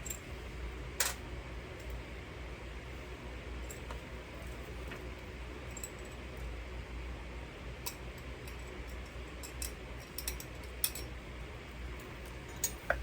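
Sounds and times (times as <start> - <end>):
low hum and hiss: 0.0 - 13.0
small metal hardware clicking: 9.4 - 11.1.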